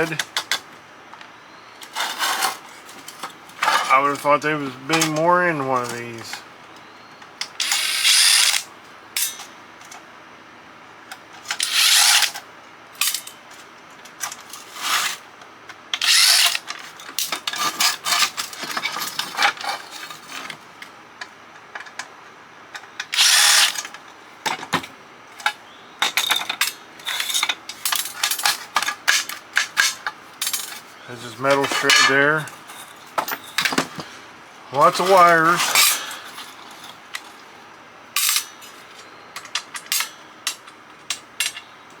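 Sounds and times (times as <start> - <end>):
small metal parts clicking: 7.4 - 10.0, 11.4 - 12.4, 15.9 - 20.4, 22.7 - 24.0, 38.2 - 41.7
power screwdriver bursts: 7.5 - 8.7, 11.6 - 12.4, 16.0 - 16.6, 23.1 - 23.8.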